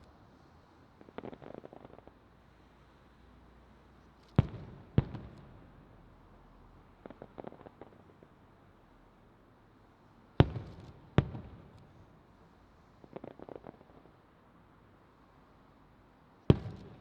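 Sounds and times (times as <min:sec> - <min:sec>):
small fireworks pops: 0:01.0 - 0:02.2, 0:04.1 - 0:05.6, 0:07.0 - 0:08.3, 0:13.0 - 0:14.2, 0:16.5 - 0:17.0.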